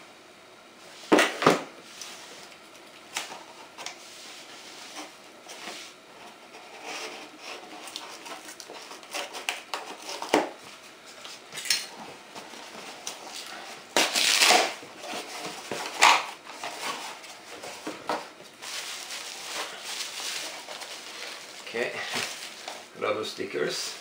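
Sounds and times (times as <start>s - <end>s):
packaging rustling: 12.3s - 22.9s.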